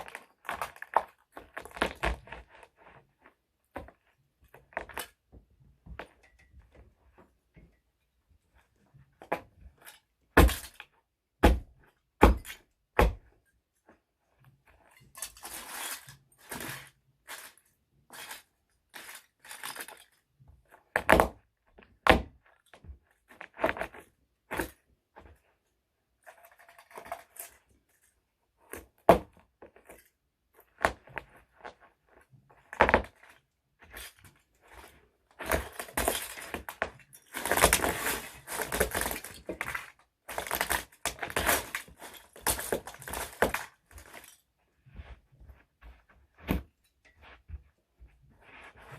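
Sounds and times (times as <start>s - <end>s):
toy trucks being crushed: 9.2s - 11.0s, 14.8s - 21.4s, 32.6s - 44.5s.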